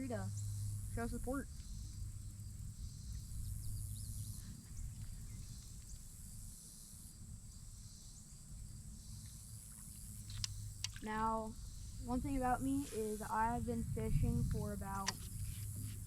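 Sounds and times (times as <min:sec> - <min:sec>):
high insect chorus: 0:00.0 - 0:16.0
low rumble: 0:11.2 - 0:15.2.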